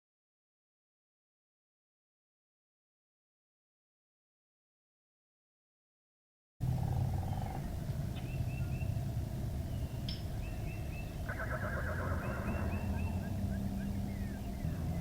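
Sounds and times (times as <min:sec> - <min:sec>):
low rumble: 0:06.6 - 0:15.0
horse-like whinny: 0:11.3 - 0:13.0.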